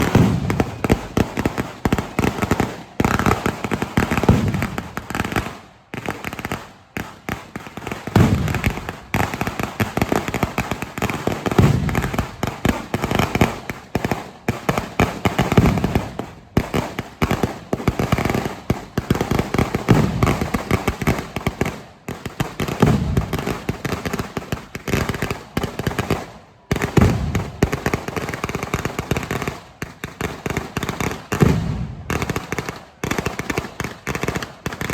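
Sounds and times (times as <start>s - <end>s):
deep firecracker bangs: 0.0s - 2.2s, 2.8s - 5.0s, 8.1s - 10.0s, 11.5s - 12.4s, 19.8s - 21.3s, 22.8s - 23.7s, 26.9s - 28.1s, 31.4s - 32.5s
firecrackers crackling: 0.0s - 34.9s.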